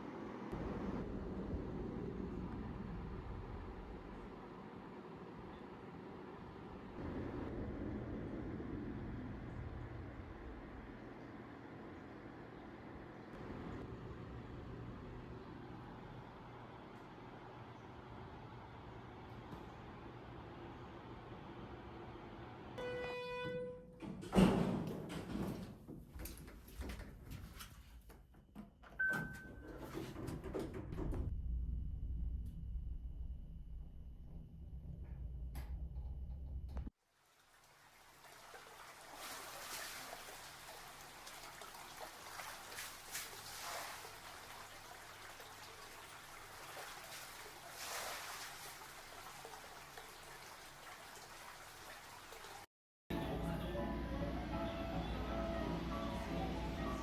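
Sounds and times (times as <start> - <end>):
loud thud and rumble: 30.7 - 36.9
water trickling: 37.1 - 52.7.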